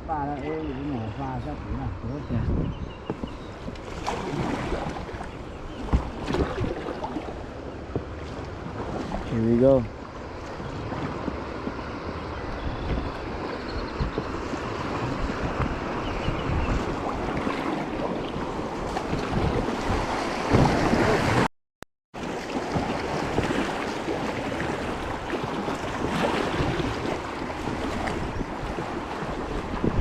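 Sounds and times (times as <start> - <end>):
water noise: 0.0 - 21.5, 22.2 - 30.0
wind on microphone: 0.0 - 21.5, 22.4 - 30.0.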